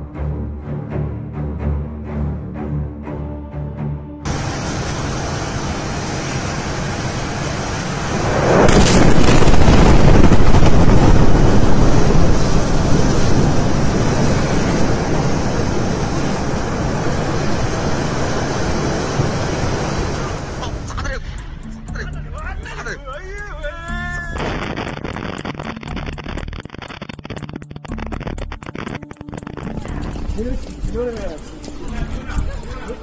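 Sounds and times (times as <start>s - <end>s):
loud long rumble: 4.2s - 20.9s
steady background noise: 4.3s - 23.4s, 24.4s - 33.0s
explosion blast: 8.1s - 15.2s, 24.4s - 25.5s.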